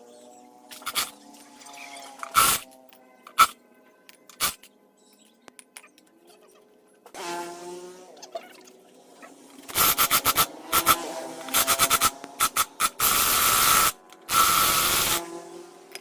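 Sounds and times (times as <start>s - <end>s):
air tool hissing blasts: 2.3s - 2.6s, 9.7s - 15.3s.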